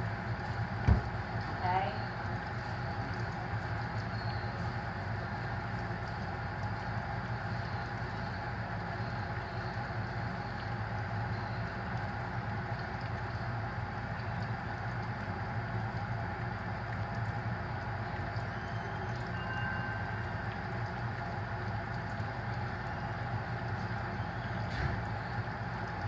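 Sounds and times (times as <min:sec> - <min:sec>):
seafood sizzling in hot oil: 0:09.1 - 0:12.7.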